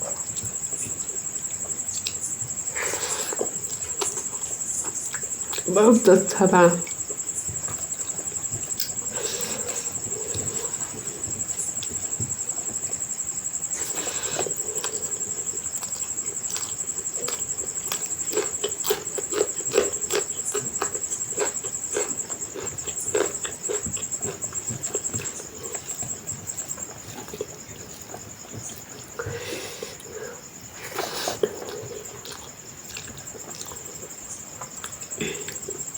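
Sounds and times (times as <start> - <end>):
chewing and wet mouth smacks: 30.9 - 35.8.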